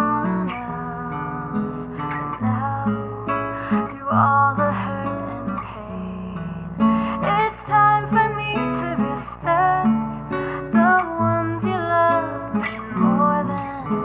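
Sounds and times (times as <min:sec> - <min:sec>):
acoustic guitar music: 0:00.0 - 0:14.0.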